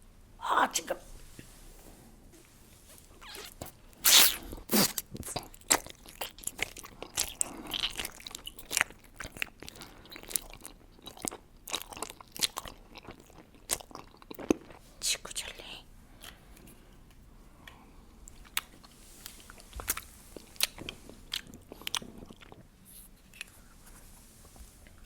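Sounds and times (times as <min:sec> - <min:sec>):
gummy crunching: 0:03.6 - 0:14.8, 0:18.3 - 0:23.5
wet chewing clicks: 0:17.7 - 0:22.7.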